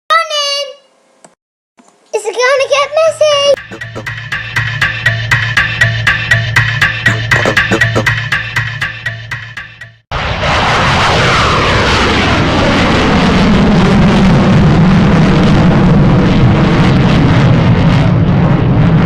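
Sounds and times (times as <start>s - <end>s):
aeroplane engine drone: 10.2s - 19.0s.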